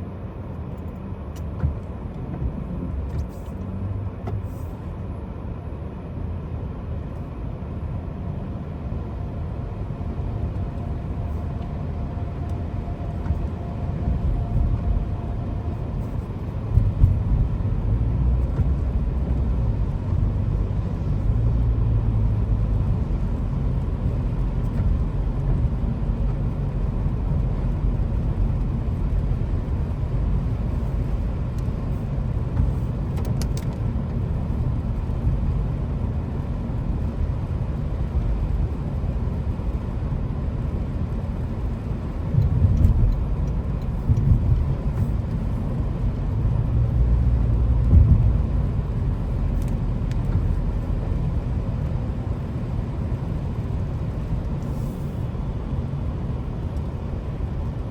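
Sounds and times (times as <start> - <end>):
car road and engine rumble: 0.0 - 57.9.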